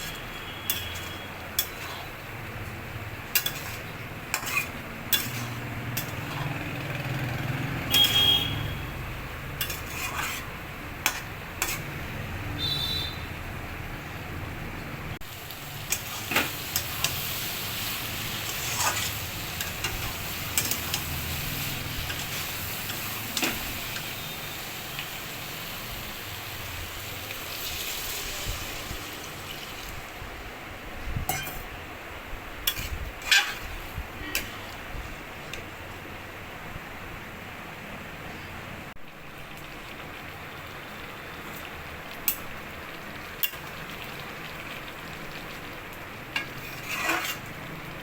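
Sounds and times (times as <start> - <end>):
curry sizzling in a pan: 0.0 - 14.4, 15.2 - 30.4, 32.6 - 36.3, 39.0 - 48.0
spoon clinking against pan: 31.3 - 31.7.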